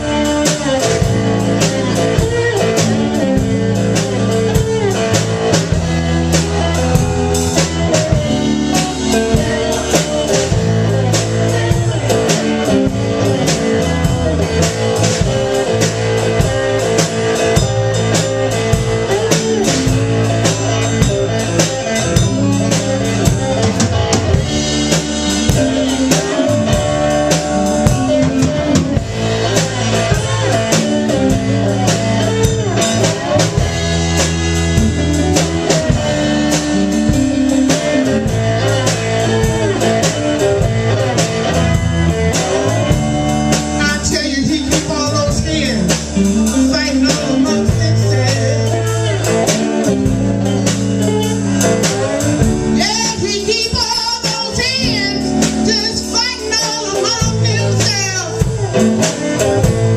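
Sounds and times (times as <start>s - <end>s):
drum kit beat: 0.0s - 59.9s
guitar: 0.0s - 59.9s
repeating bass line: 0.0s - 59.9s
person singing: 43.8s - 59.7s.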